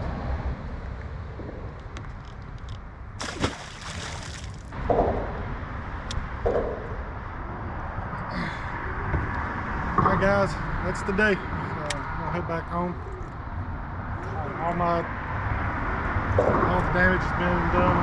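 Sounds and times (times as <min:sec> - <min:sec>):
water splashing and sloshing: 0:02.1 - 0:04.9.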